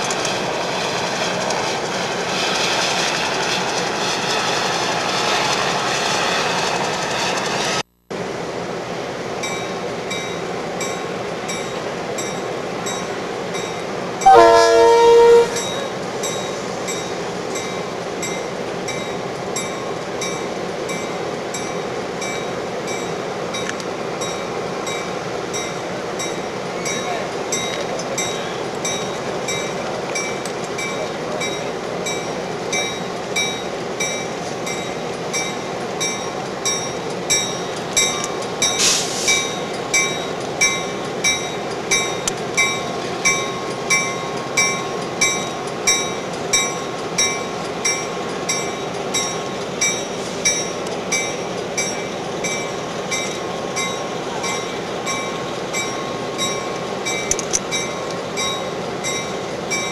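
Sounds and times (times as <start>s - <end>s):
diesel locomotive engine: 0.0s - 59.9s
locomotive bell ringing: 9.4s - 59.9s
air hiss: 38.7s - 39.6s.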